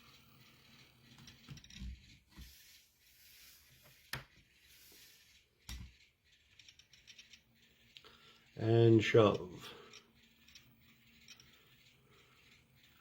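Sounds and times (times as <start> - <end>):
light rubbing: 0.4 - 13.0.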